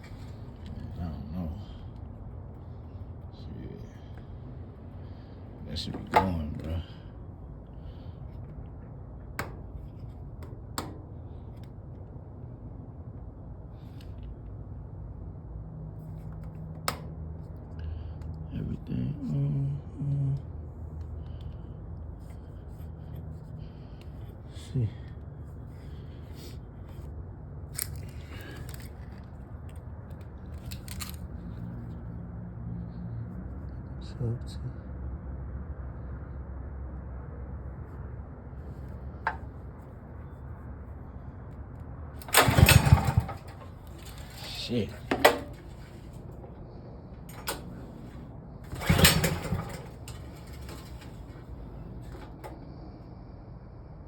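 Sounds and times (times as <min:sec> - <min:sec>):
generator pull-starter raspy pulls: 0:30.6 - 0:31.2, 0:42.2 - 0:46.6, 0:47.2 - 0:52.6
engine turning over: 0:30.6 - 0:31.3, 0:42.2 - 0:46.6, 0:47.2 - 0:52.7.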